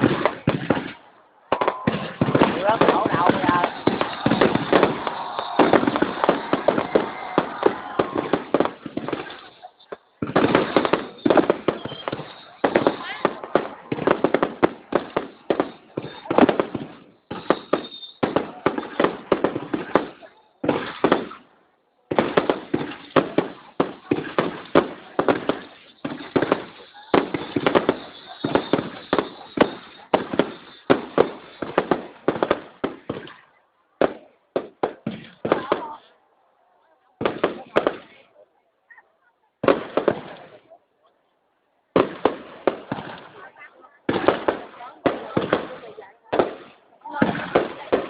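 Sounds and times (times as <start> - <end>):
fireworks bursting with sharp bangs: 0.0 - 36.2, 37.2 - 40.8, 41.9 - 48.0.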